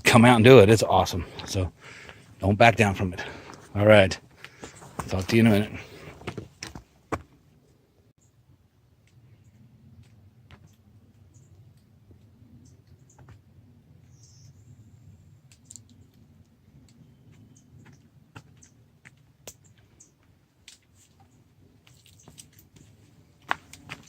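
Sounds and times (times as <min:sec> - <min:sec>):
footsteps on rocky trail: 0:01.2 - 0:07.4, 0:22.2 - 0:24.0.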